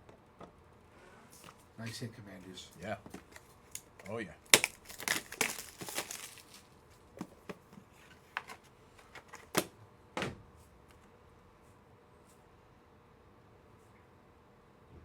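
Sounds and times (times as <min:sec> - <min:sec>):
plastic card cases rustling and clicking: 0:02.8 - 0:09.7.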